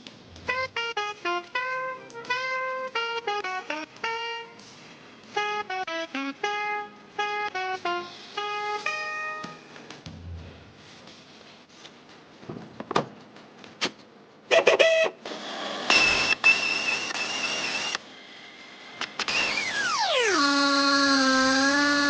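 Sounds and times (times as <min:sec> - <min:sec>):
loud tool whir: 0:15.2 - 0:18.0, 0:19.0 - 0:22.0.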